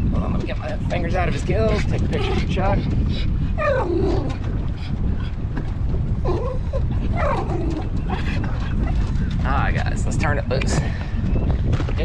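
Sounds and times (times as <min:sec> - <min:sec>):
steady low rumble: 0:00.0 - 0:12.0
dog whining: 0:03.6 - 0:04.4, 0:06.2 - 0:08.0.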